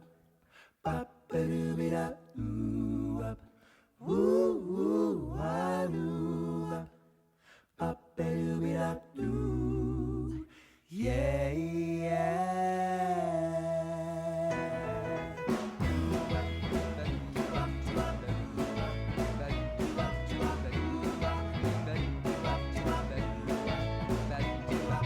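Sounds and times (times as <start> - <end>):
person singing unaccompanied: 15.8 - 25.0.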